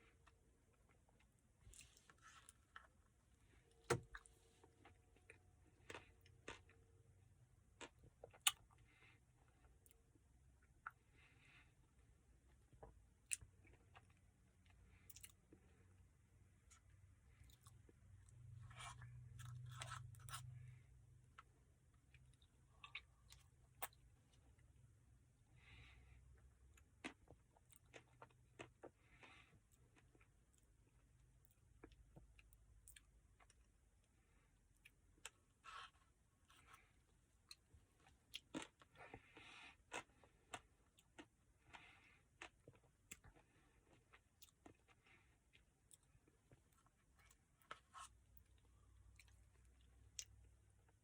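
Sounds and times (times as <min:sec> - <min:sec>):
faint low hum: 0:00.0 - 0:51.0
chewing and biting: 0:26.8 - 0:30.3.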